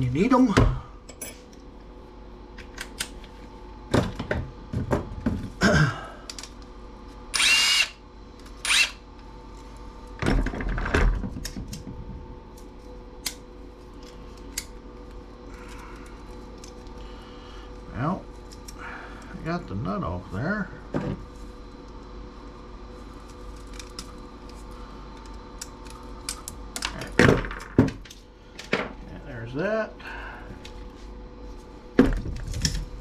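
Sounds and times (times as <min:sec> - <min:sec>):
power drill bursts: 0:07.3 - 0:08.0, 0:08.6 - 0:09.0.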